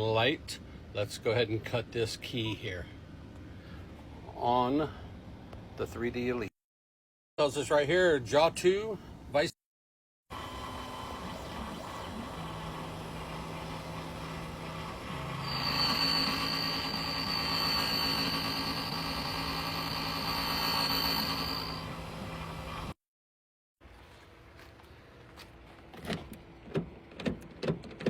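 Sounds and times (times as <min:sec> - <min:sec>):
high whine of spinning cutter: 0:10.3 - 0:23.0
motor hum: 0:10.3 - 0:23.0.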